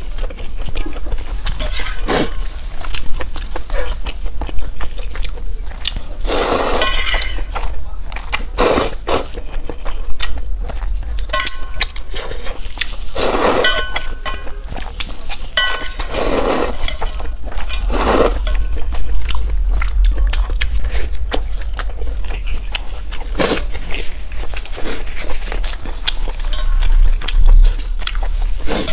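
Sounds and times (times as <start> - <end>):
chewing and eating mouth noises: 0.0 - 28.9
steady low hum: 0.0 - 28.9
utensils clinking against bowl: 1.4 - 2.5, 6.6 - 7.6, 11.2 - 12.6, 13.2 - 18.8, 25.0 - 27.3.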